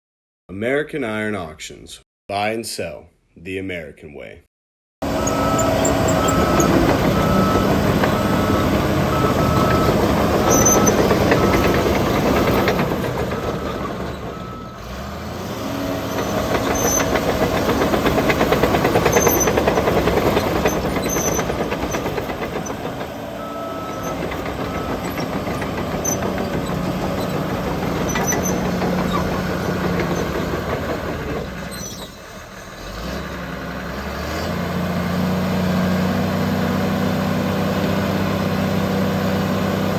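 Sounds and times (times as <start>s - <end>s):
bulldozer diesel engine: 5.0s - 39.9s
backup alarm beeping: 5.2s - 12.5s.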